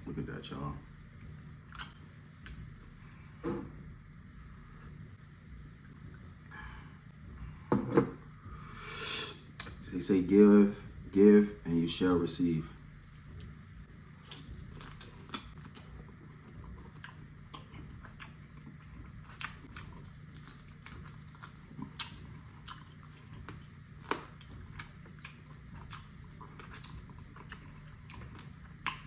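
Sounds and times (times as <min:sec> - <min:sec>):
faint low hum: 0:00.0 - 0:29.0
person chewing food: 0:13.1 - 0:29.0.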